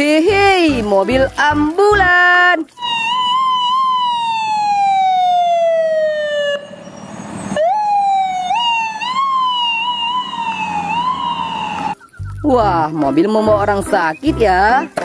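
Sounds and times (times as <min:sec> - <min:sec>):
ambulance siren wailing: 0:02.8 - 0:12.2.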